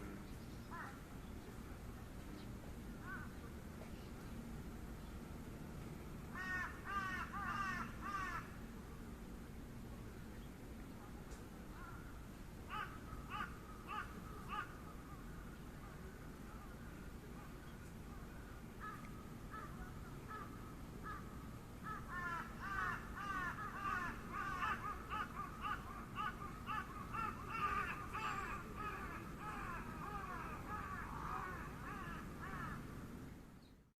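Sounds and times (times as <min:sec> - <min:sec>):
birds calling: 0:18.8 - 0:32.8.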